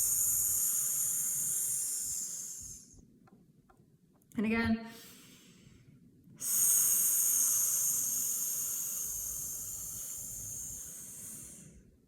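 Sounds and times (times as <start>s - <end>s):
woman exhaling with a hiss: 0.0s - 3.0s, 6.4s - 11.9s.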